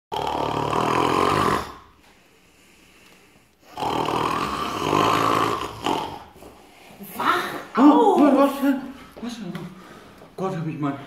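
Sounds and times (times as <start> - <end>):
person snoring loudly: 0.1 - 2.0, 3.6 - 6.4.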